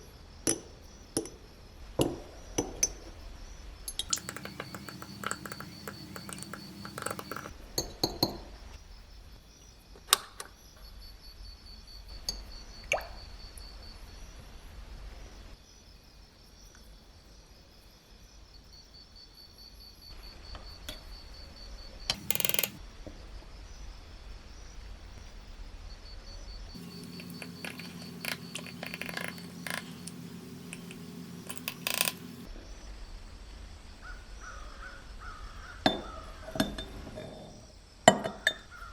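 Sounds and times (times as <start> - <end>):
quick run of clicks: 4.0 - 7.5, 22.1 - 22.8
metal parts clinking: 22.1 - 22.8, 26.8 - 32.5.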